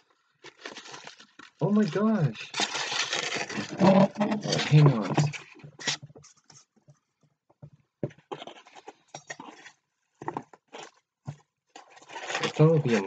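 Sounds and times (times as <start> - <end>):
packaging rustling and knocking: 2.5 - 6.8, 7.6 - 13.0.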